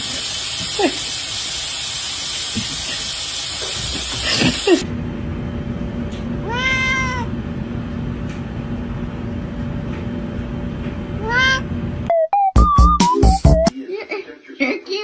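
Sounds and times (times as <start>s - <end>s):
cat meowing: 6.4s - 7.3s, 11.2s - 11.6s.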